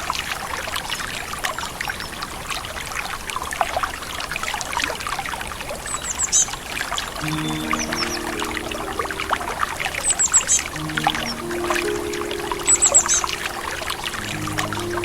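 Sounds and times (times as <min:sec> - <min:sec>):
river babbling over rocks: 0:07.2 - 0:15.0.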